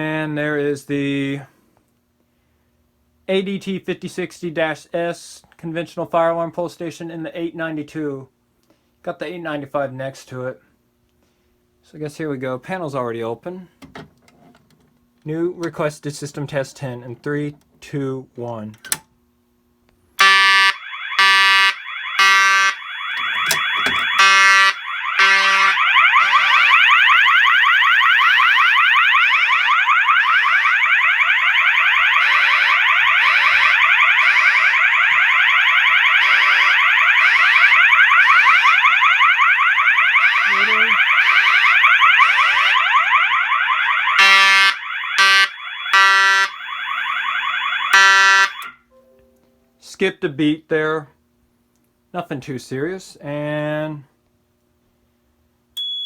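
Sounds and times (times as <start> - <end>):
alarm sounder fast warble tone: 20.2 - 28.6, 35.5 - 48.8
fire alarm temporal pulses: 20.2 - 48.9, 55.8 - 56.0.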